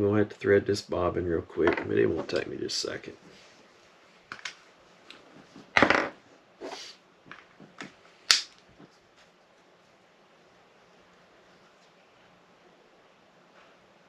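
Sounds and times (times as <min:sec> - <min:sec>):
scrape: 0:06.6 - 0:07.0.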